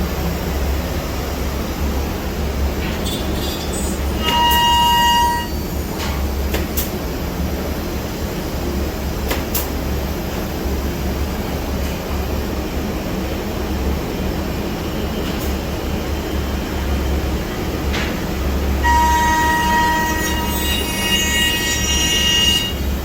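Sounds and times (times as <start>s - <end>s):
cnc router humming: 18.5s - 23.0s.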